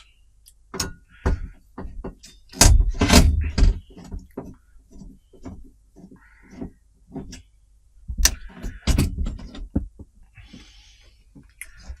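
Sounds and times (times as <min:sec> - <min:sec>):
clicks and knocks of parts handled: 0:00.0 - 0:07.5.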